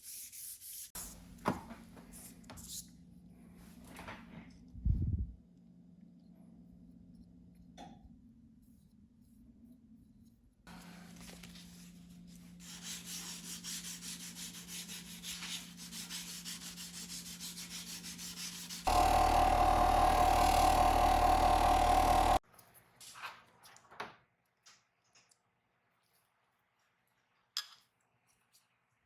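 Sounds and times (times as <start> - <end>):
scratchy sanding: 12.6 - 22.4
small electric tool humming: 18.8 - 22.4
loud high-pitched tool noise: 18.9 - 22.4.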